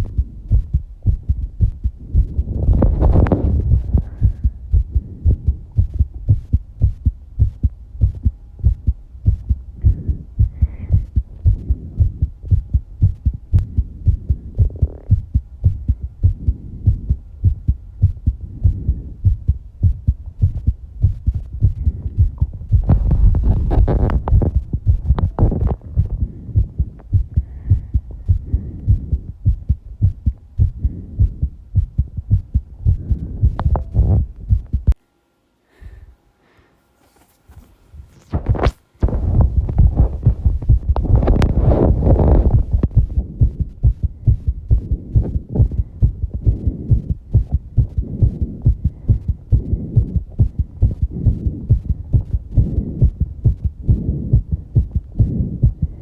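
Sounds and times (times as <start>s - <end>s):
fast heartbeat thumps: 0.0s - 35.0s, 37.4s - 56.0s
heavy breathing: 2.0s - 5.7s, 9.7s - 12.3s, 25.8s - 29.4s, 30.6s - 32.0s, 32.8s - 33.8s, 35.6s - 37.7s, 44.0s - 56.0s.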